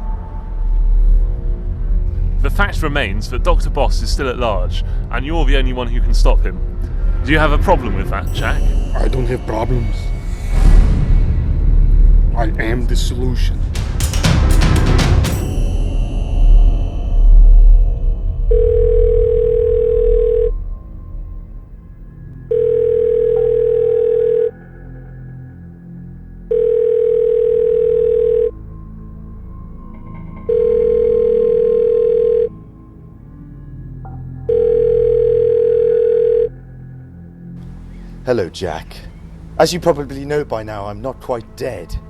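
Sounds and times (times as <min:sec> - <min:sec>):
low film music swell: 0:00.0 - 0:42.0
soft background music: 0:00.0 - 0:42.0
telephone ringing tone beeps: 0:18.5 - 0:20.6, 0:22.5 - 0:24.5, 0:26.5 - 0:28.6, 0:30.5 - 0:32.6, 0:34.5 - 0:36.5.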